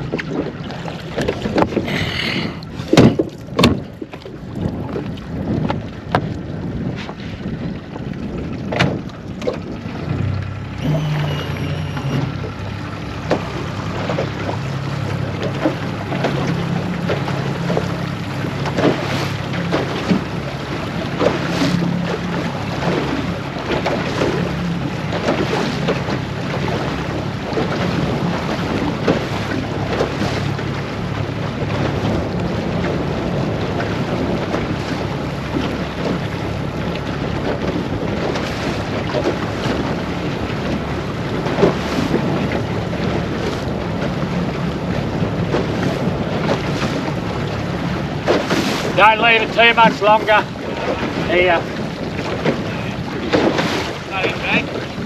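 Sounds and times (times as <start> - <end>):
wind on microphone: 0.0 - 25.7
boat motor running: 0.0 - 55.0
water splashing on hull: 0.0 - 55.0.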